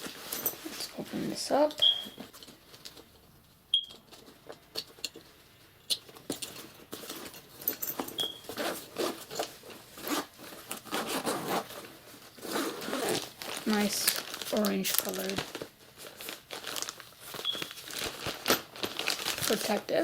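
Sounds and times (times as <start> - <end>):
backpack zipper unzipping: 10.9 - 11.7, 12.4 - 13.3.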